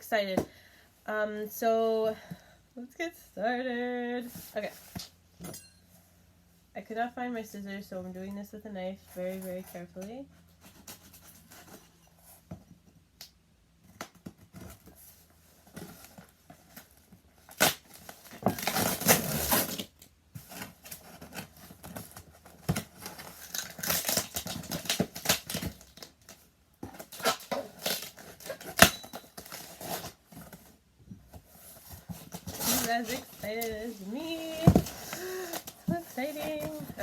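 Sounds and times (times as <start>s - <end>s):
rustling of packaging: 14.1s - 37.0s
knife slitting tape and cardboard: 17.4s - 30.7s, 31.6s - 37.0s
packaging tearing: 17.5s - 30.5s, 32.1s - 37.0s.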